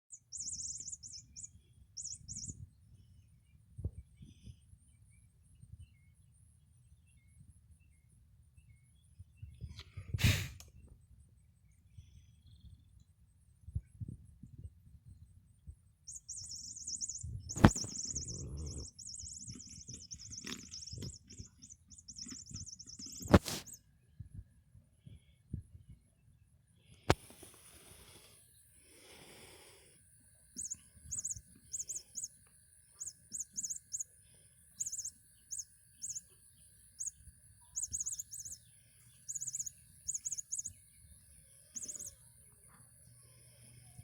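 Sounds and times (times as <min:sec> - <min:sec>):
high chirping trills: 0:00.1 - 0:02.6, 0:16.0 - 0:23.8, 0:30.4 - 0:44.0.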